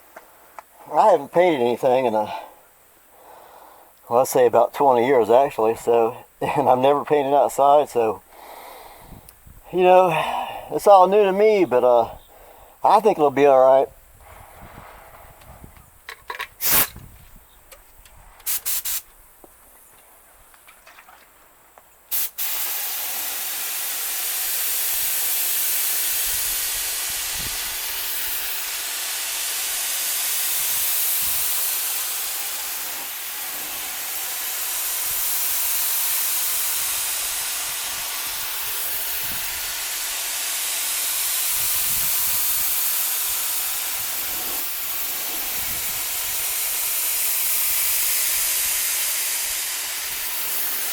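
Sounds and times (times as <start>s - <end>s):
spray gun hissing: 16.6s - 16.9s, 18.5s - 19.1s, 22.1s - 50.9s.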